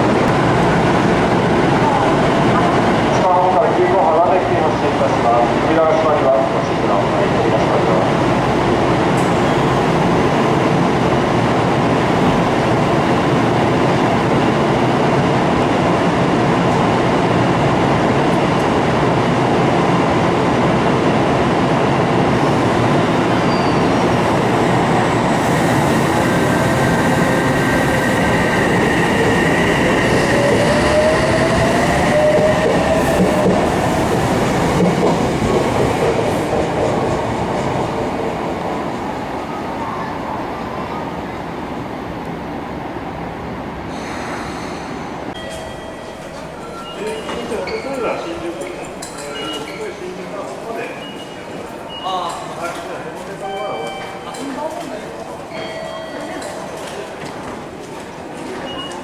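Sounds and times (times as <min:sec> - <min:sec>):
train wheels rumbling on rail: 0:00.0 - 0:40.4.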